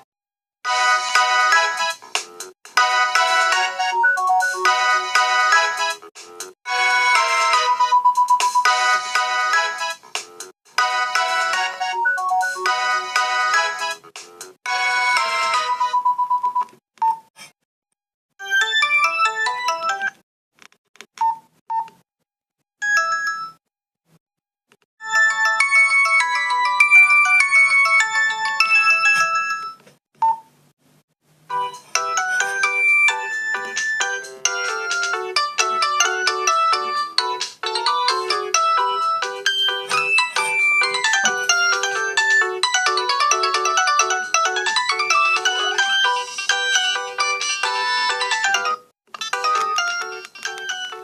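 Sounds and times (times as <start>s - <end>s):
polyphonic ringtones from phone speaker: 25.0s - 30.4s, 31.6s - 51.0s.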